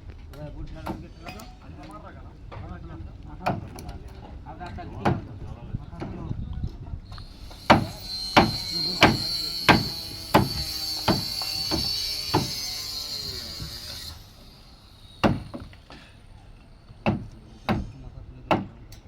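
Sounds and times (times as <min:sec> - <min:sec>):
high-pitched whine: 0:07.1 - 0:17.0
tool striking knocks: 0:07.5 - 0:12.6, 0:15.2 - 0:15.8, 0:17.0 - 0:18.7.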